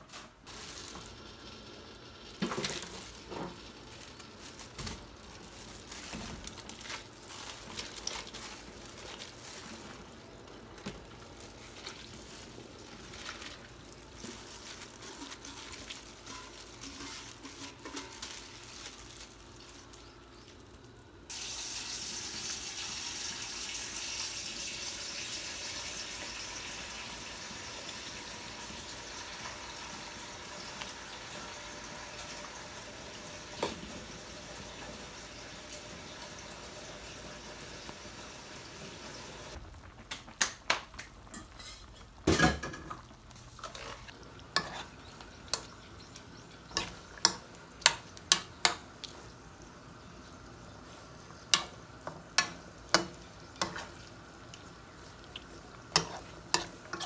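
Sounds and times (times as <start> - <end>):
tap water running: 0.8 - 15.4, 21.2 - 40.8
dishes and utensils clattering: 15.0 - 18.5, 41.3 - 43.0.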